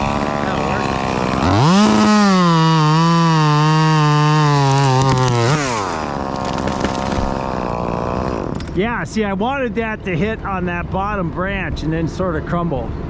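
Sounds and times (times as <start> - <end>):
chainsaw cutting wood: 0.0 - 8.8.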